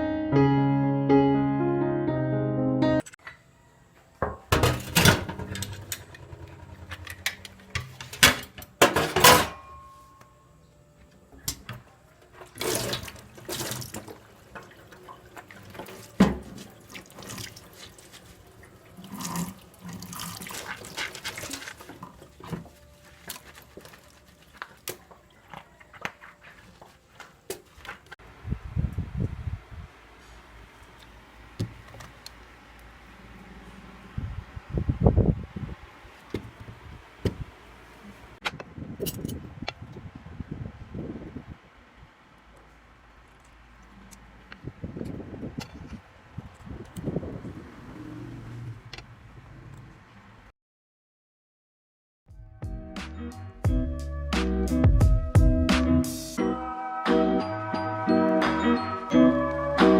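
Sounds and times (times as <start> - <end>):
utensils and dishes clinking: 4.3 - 10.4
water running from a tap: 12.6 - 22.2.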